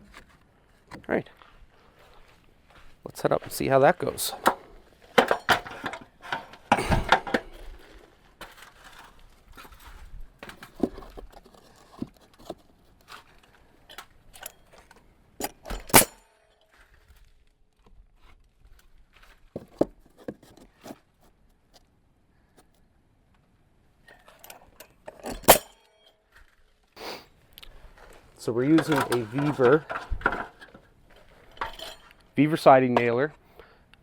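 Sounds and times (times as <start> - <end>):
knocks and clatter of wooden boards: 4.2 - 14.0, 19.2 - 21.1, 28.0 - 32.1.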